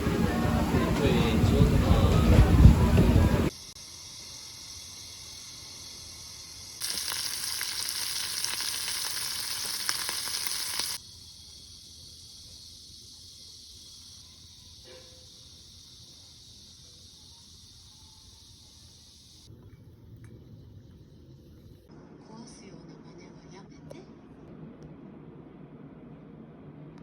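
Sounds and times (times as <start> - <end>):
steady hiss: 3.5 - 19.5.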